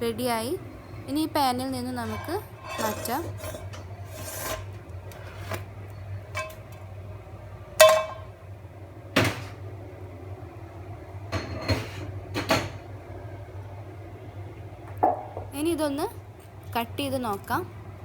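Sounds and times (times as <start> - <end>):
cookware clinks and knocks: 2.0 - 3.8, 6.4 - 6.7, 7.8 - 8.3.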